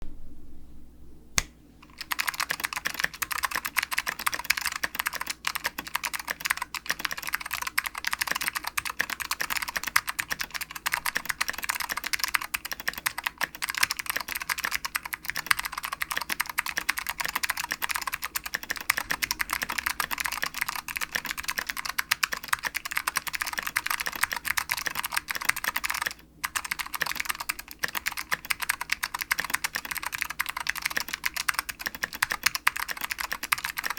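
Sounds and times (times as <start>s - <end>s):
fast typing on mechanical keyboard: 1.9s - 33.9s.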